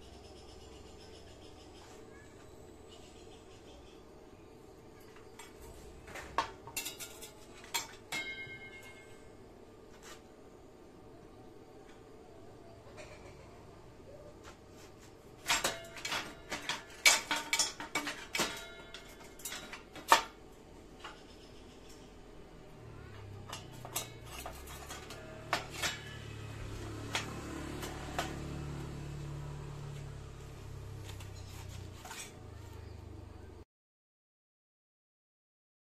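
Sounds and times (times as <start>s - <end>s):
metallic clinks and knocks: 15.4s - 22.0s, 23.2s - 30.0s.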